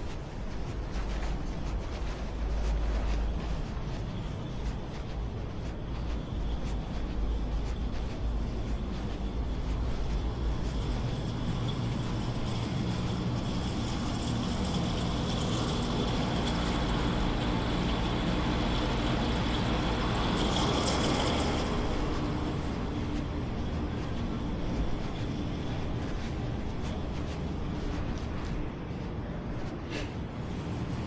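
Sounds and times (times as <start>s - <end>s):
street traffic noise: 9.5s - 28.2s.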